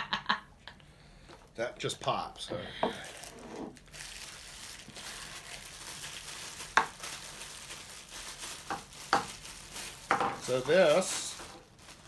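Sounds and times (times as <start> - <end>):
plastic packaging crinkling: 2.9 - 12.0.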